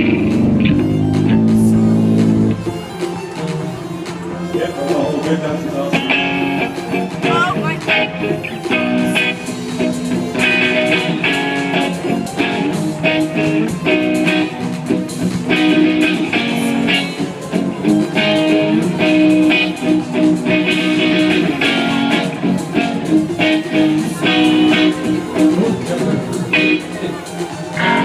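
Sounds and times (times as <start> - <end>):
guitar chords through pa: 0.0 - 28.0.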